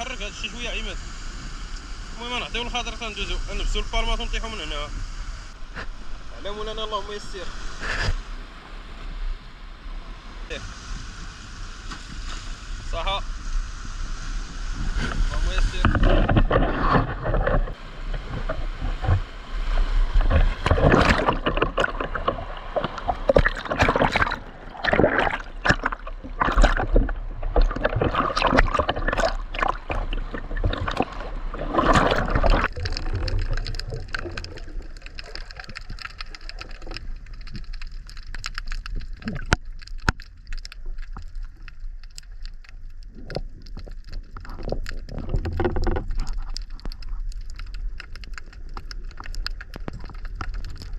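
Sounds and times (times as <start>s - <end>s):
wind on microphone: 10.4s - 34.9s
sea water splashing: 14.8s - 50.9s.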